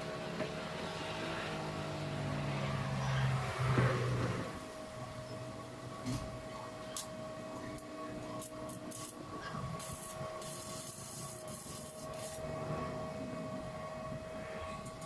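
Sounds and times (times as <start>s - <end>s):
steady hum: 0.0s - 15.0s
metal scraping and rubbing: 8.3s - 13.6s.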